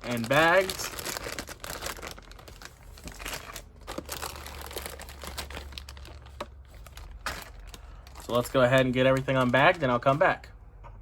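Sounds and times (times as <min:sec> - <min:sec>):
plastic bags crinkling: 0:00.0 - 0:10.3.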